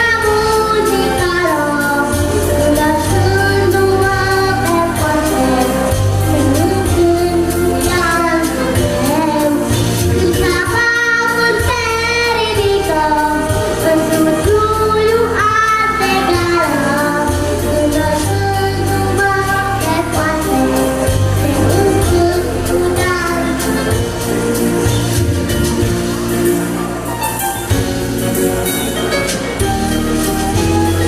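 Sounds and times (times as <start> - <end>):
girl singing: 0.0 - 24.2
pop backing track: 0.0 - 31.0.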